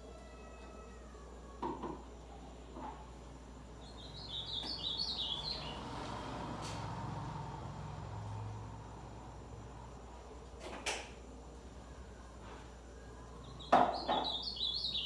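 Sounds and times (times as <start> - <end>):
bird singing high notes: 13.5 - 15.0.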